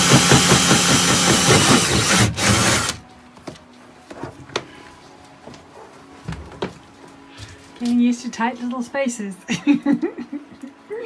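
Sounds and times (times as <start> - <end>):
saw cutting wood: 0.0 - 3.0.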